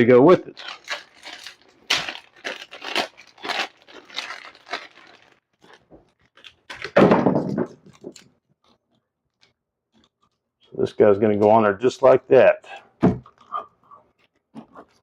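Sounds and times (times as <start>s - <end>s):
plastic packaging crinkling and tearing: 0.0s - 7.0s.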